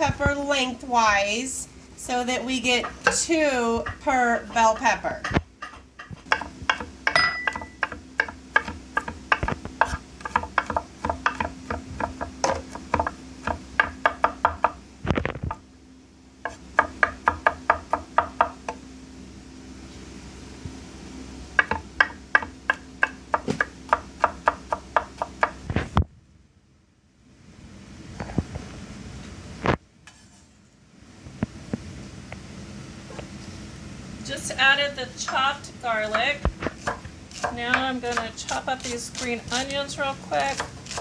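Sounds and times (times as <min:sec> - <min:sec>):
faint steady hum: 0:00.0 - 0:41.0
knife chopping on cutting board: 0:05.3 - 0:14.8, 0:16.4 - 0:18.8, 0:21.6 - 0:25.6, 0:36.7 - 0:41.0.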